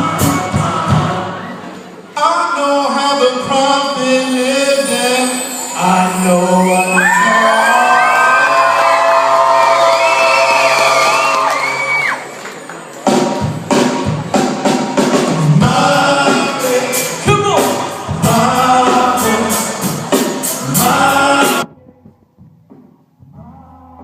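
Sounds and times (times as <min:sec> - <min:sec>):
person singing: 0:00.0 - 0:09.2, 0:15.4 - 0:22.1, 0:23.2 - 0:24.0
steady drum beat: 0:13.1 - 0:23.0.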